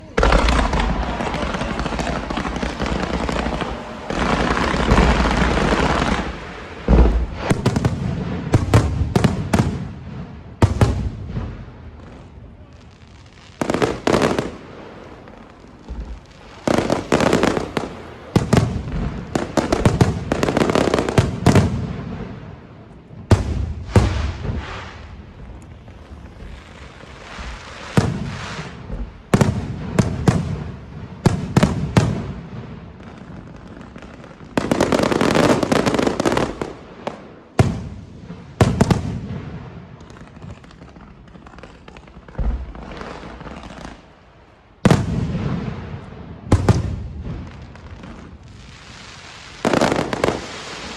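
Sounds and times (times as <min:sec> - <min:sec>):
fireworks bangs: 0:00.0 - 0:50.9
fireworks crackling and booming: 0:00.0 - 0:50.9.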